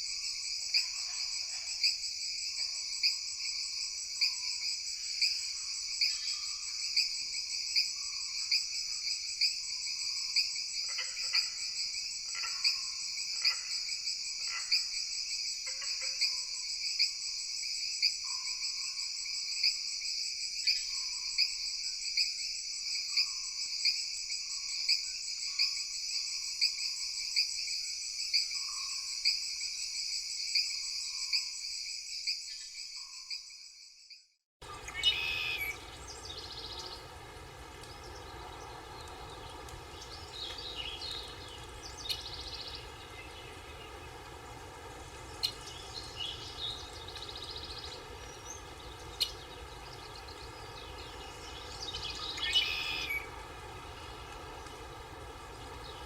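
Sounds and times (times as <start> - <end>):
chorus of trilling insects: 34.6 - 56.0.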